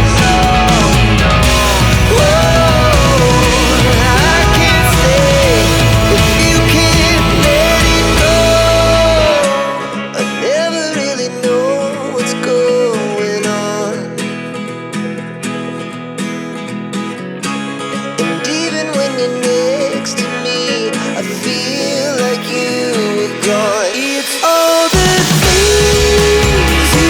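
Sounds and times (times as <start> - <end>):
guitar-led song: 0.0 - 27.0.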